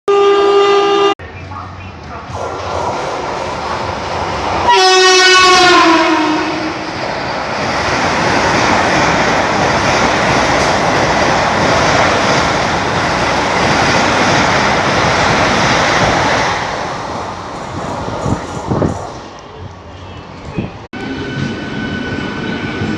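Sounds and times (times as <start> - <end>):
train horn: 0.1 - 1.2, 4.6 - 6.8, 21.0 - 22.3
train rushing past: 1.2 - 22.9.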